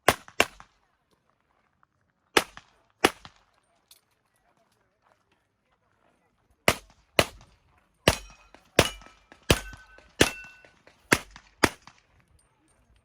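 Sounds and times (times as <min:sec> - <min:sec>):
handgun shots: 0:06.7 - 0:07.5, 0:08.1 - 0:12.0
steel targets ringing: 0:08.1 - 0:10.8.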